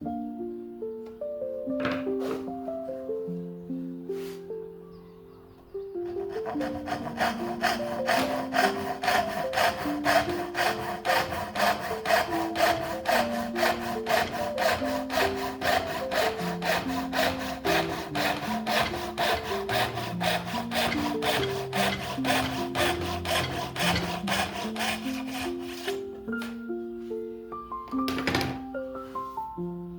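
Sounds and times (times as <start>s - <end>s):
hand saw cutting wood: 6.0s - 26.1s.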